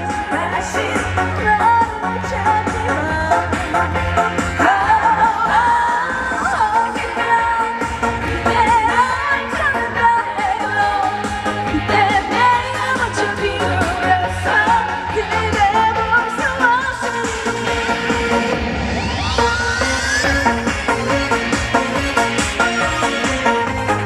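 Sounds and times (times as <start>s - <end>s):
woman singing with vibrato: 0.0s - 18.6s
backing track with steady beat: 0.0s - 24.0s.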